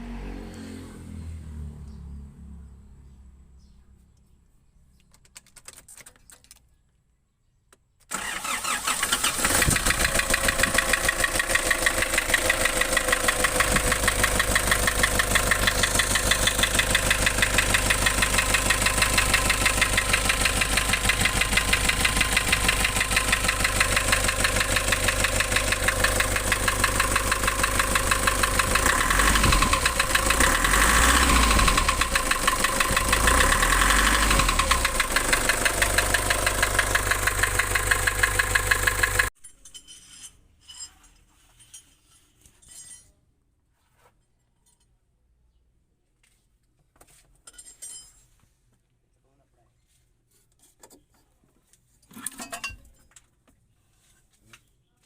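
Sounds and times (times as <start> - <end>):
diesel engine starting and idling: 8.1 - 39.3.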